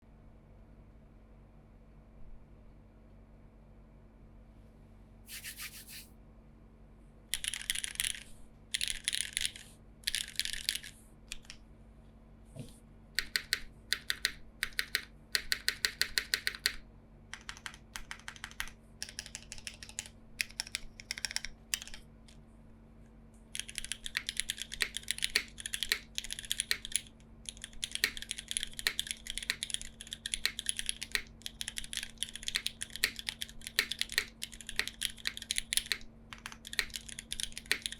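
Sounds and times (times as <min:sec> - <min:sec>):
mechanical keyboard typing: 0:07.3 - 0:11.6, 0:13.2 - 0:22.1, 0:23.5 - 0:37.9.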